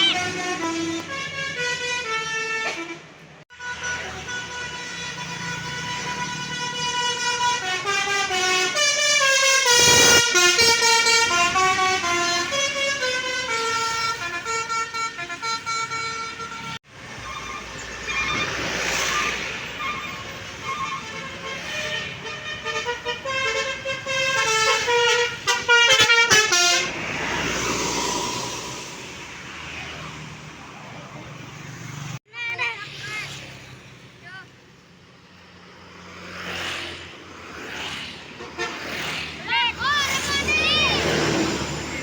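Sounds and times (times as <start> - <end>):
bus multi-tone horns playing tunes: 0.0 - 27.6, 38.4 - 42.0
buses passing: 0.0 - 42.0.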